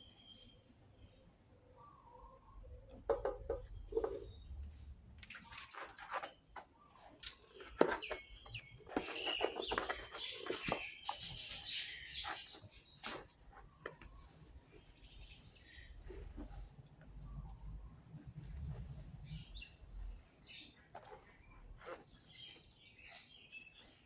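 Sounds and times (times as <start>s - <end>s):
birds chirping: 0.0s - 17.9s, 19.1s - 24.0s.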